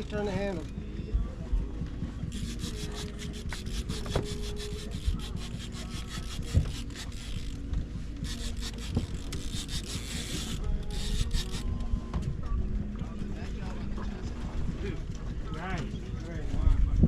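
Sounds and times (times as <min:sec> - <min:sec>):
fishing reel ticking: 0:02.3 - 0:11.7.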